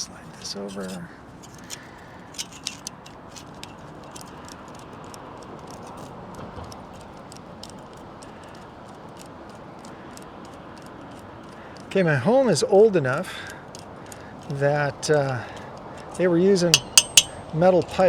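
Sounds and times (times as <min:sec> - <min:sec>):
metal hose clamp clicking: 0:00.0 - 0:12.0, 0:13.2 - 0:17.6
steady background noise: 0:00.0 - 0:18.0.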